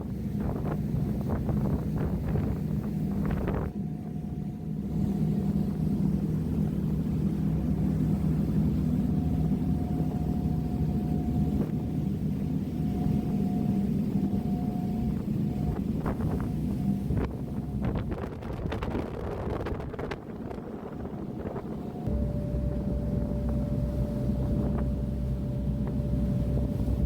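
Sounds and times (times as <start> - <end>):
ferry engines droning: 0.0 - 18.1, 20.0 - 27.0
thin high steady tone: 22.0 - 27.0.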